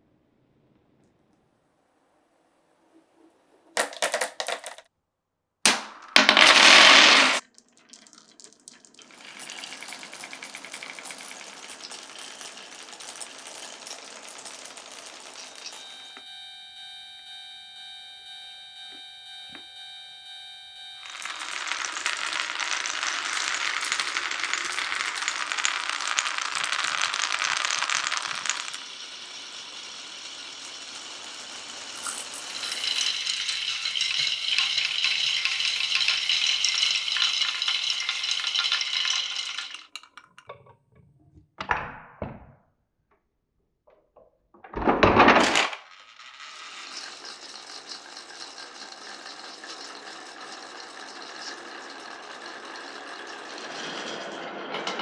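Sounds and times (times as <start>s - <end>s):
marbles rattling down wooden run: 3.8s - 4.8s, 5.7s - 16.0s, 21.0s - 40.4s, 45.3s - 55.0s.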